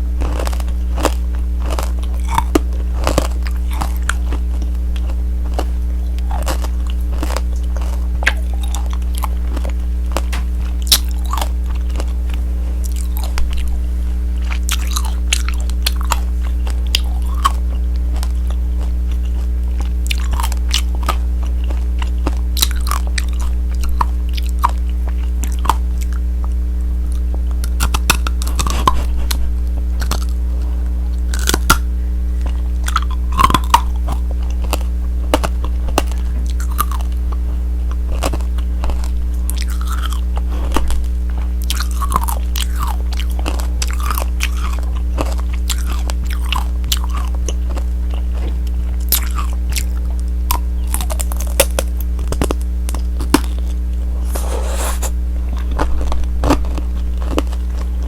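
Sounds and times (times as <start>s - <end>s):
steady low hum: 0.0s - 58.0s
candy shell cracking and crunching: 14.5s - 26.2s, 30.0s - 30.4s, 31.2s - 31.9s, 32.5s - 58.0s.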